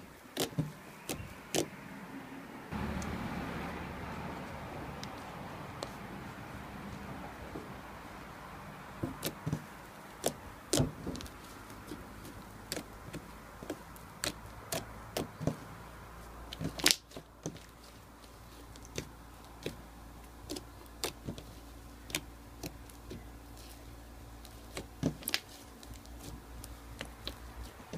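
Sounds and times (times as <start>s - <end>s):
slime crackling and popping: 16.7s - 17.2s.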